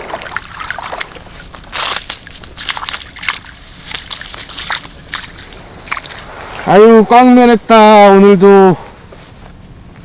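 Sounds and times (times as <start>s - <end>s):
water sloshing and splashing: 0.0s - 6.9s
steady low rumble: 0.0s - 10.0s.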